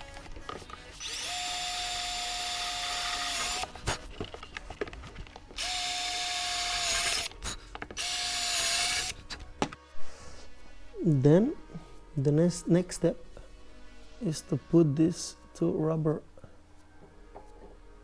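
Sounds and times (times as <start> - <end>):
power drill whining: 0.0 - 4.4, 5.6 - 9.5.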